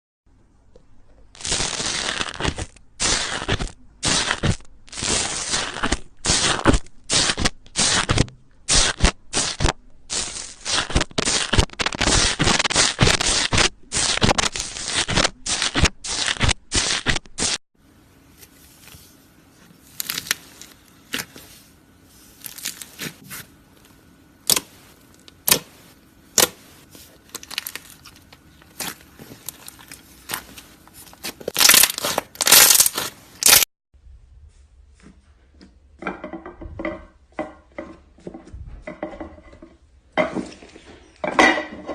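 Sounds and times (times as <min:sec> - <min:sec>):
faint hum: 0:17.8 - 0:36.0
close-up crunching and crackling: 0:19.8 - 0:21.6, 0:22.3 - 0:33.7.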